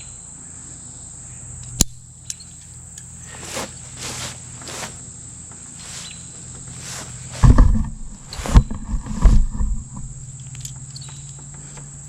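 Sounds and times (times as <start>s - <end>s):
insects buzzing: 0.0s - 12.0s
rope and carabiner rustling: 2.3s - 11.5s.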